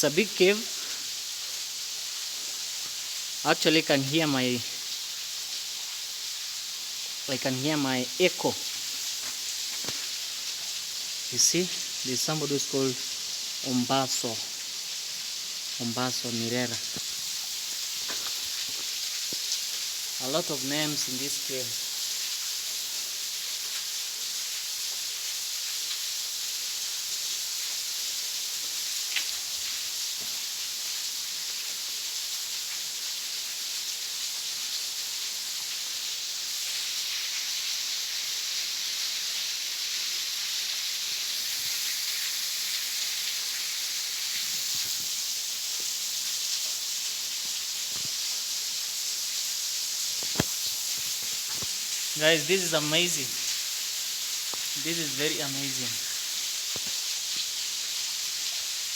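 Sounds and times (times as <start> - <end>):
waterfall pouring in a cave: 0.0 - 58.9.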